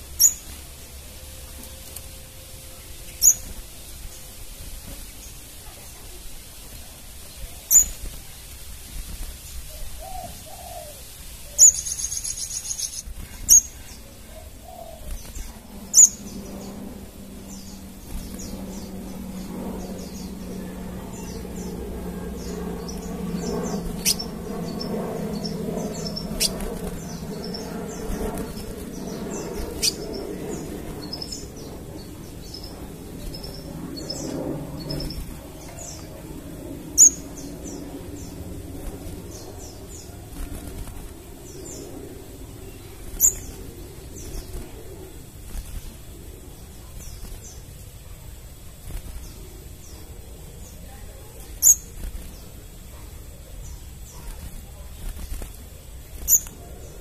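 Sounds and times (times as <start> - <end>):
low steady hum: 0.0 - 57.0
bird chirping: 9.7 - 40.7, 41.4 - 45.0, 49.2 - 55.4, 56.1 - 57.0.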